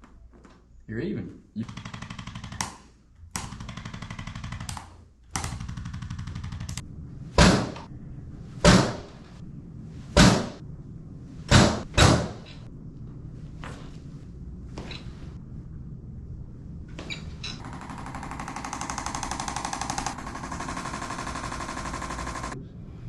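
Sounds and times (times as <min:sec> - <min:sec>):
sharp thuds: 0:10.1 - 0:10.6
rapid mechanical buzzing: 0:17.6 - 0:22.6.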